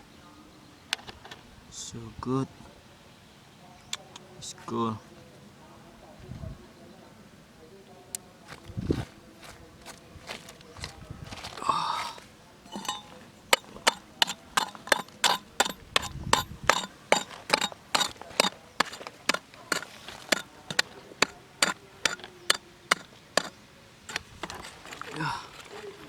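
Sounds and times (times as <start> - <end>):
hand tool tapping hard material: 12.7 - 26.0.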